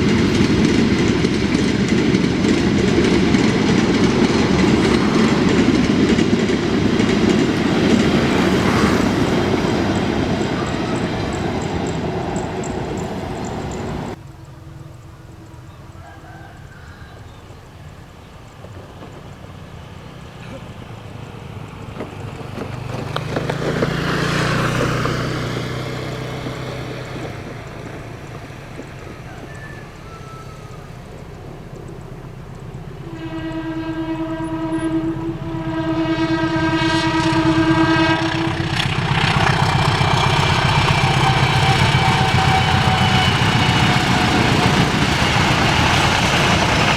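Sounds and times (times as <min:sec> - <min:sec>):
train horn blasts: 0:00.0 - 0:14.2, 0:32.8 - 0:46.9
passing vehicle sound: 0:00.0 - 0:16.8, 0:17.8 - 0:46.9
train rumble: 0:00.0 - 0:46.9.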